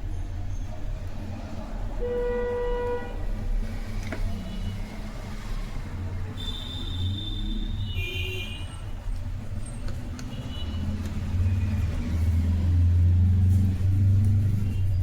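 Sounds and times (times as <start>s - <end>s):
road traffic rumbling: 0.0s - 15.0s
car horn: 2.0s - 3.3s, 6.4s - 8.9s.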